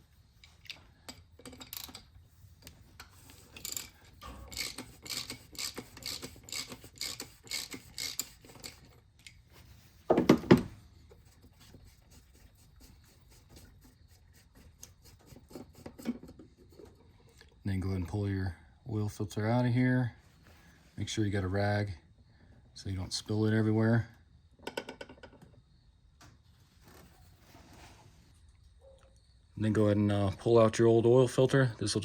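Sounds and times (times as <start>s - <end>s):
socket ratchet clicking: 4.5s - 8.8s.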